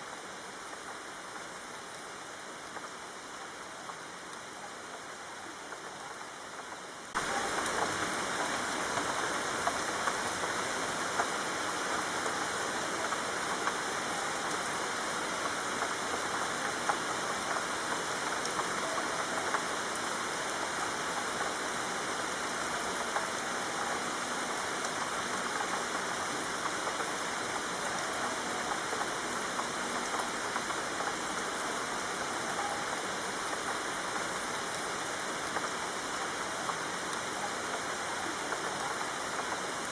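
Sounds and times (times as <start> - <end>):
rain on hard surfaces: 0.0 - 39.9.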